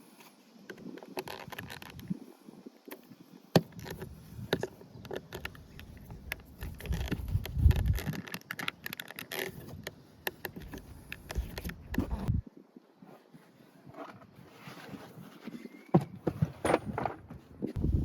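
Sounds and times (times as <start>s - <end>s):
rumbling handling noise: 3.6s - 12.4s, 13.0s - 18.0s.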